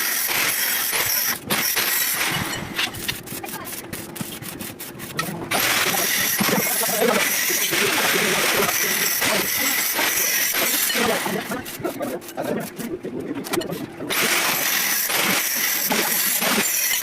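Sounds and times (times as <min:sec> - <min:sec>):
arc welding crackling sizzle: 0:00.0 - 0:17.0.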